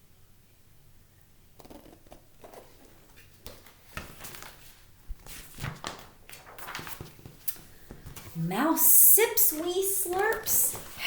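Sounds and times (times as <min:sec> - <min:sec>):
paper pages rustling: 0:01.6 - 0:08.5, 0:09.5 - 0:11.0.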